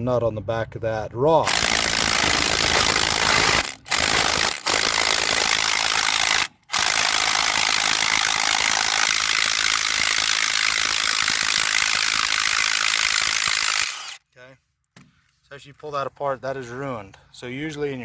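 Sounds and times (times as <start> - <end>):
machinery rattling: 1.4 - 14.2.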